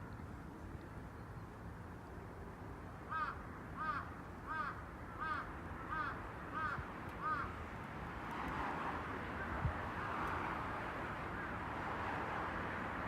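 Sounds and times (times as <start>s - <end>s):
crow cawing: 3.1s - 7.5s.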